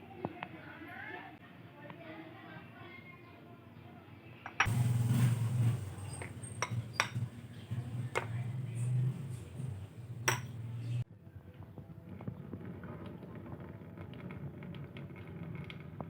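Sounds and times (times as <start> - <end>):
utensils clinking on cookware: 4.6 - 11.0
steady low hum: 4.7 - 11.0.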